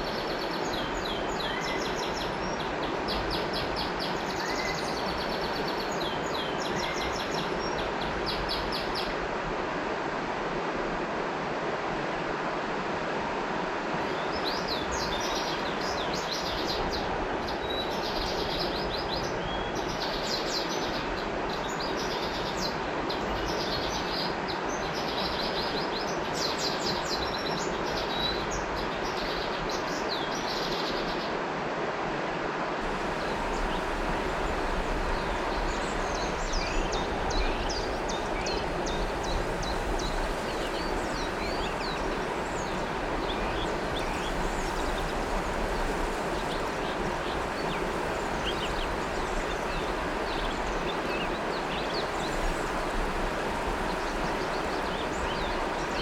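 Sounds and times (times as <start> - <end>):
river water rushing: 0.0 - 56.0
small birds chirping: 32.8 - 56.0.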